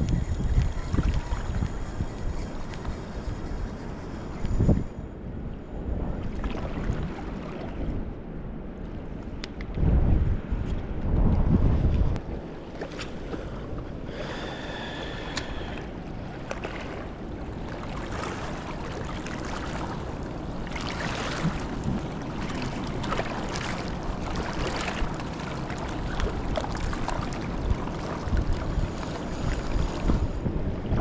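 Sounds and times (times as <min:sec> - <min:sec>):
wind on microphone: 0:00.0 - 0:31.0.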